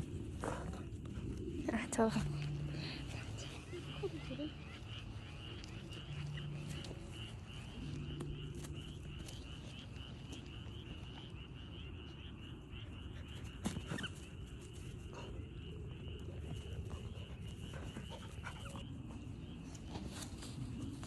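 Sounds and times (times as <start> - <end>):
rhythmic high-pitched chirping chorus: 1.7 - 14.8.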